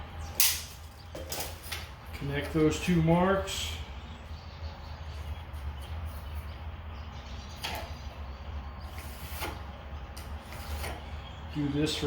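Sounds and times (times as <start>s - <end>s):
steady low hum: 0.0s - 12.0s
pencil scraping on wood: 8.8s - 9.7s, 10.3s - 11.1s.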